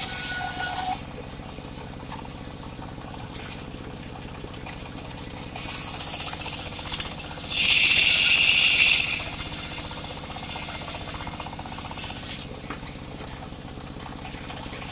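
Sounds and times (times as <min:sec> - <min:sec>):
loud hissing burst: 0:05.6 - 0:12.4
saw rig engine running: 0:05.6 - 0:12.6.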